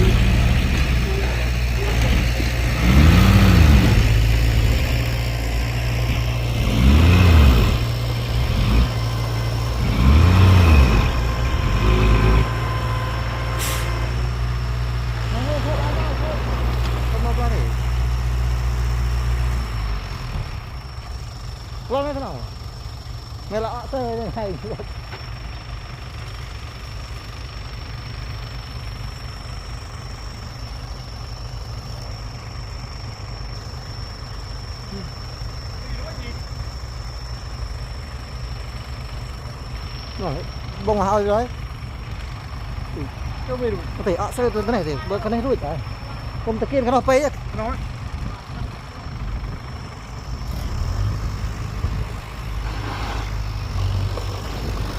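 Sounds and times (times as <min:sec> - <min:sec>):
high-pitched whine: 0:00.0 - 0:14.6, 0:29.1 - 0:42.0
heavy diesel engine revving: 0:00.0 - 0:25.0, 0:25.6 - 0:54.9.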